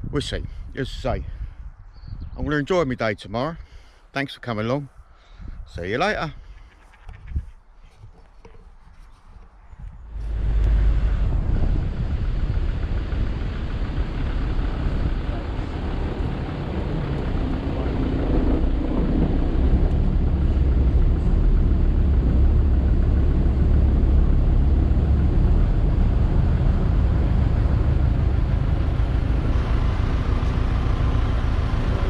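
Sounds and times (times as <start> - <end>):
car engine and road rumble: 8.2 - 32.0.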